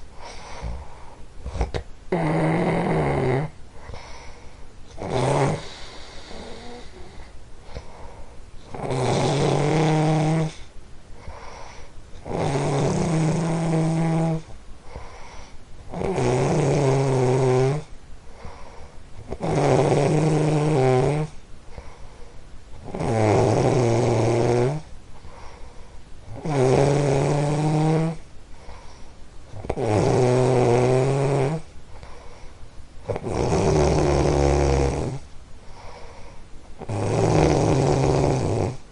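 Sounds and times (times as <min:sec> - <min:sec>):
quiet breathing: 0:00.0 - 0:02.0, 0:03.4 - 0:15.9, 0:17.8 - 0:19.4, 0:21.2 - 0:22.8, 0:24.6 - 0:26.5, 0:28.0 - 0:29.8, 0:31.5 - 0:37.3
loud rattling snores: 0:01.5 - 0:03.6, 0:05.0 - 0:07.1, 0:08.7 - 0:10.6, 0:12.2 - 0:14.5, 0:15.9 - 0:17.9, 0:19.3 - 0:21.4, 0:22.8 - 0:24.9, 0:26.3 - 0:28.2, 0:29.6 - 0:31.7, 0:33.1 - 0:35.2, 0:36.8 - 0:38.8.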